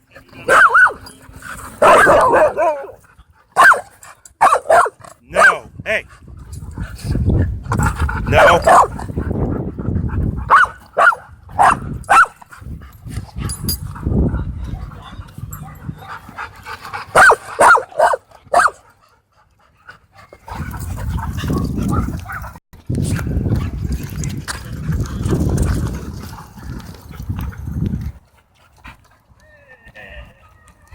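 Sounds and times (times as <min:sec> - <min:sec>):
dogs barking sharply: 0:00.4 - 0:01.0, 0:01.8 - 0:03.0, 0:03.6 - 0:05.6, 0:08.4 - 0:09.0, 0:10.5 - 0:12.4, 0:17.1 - 0:18.8.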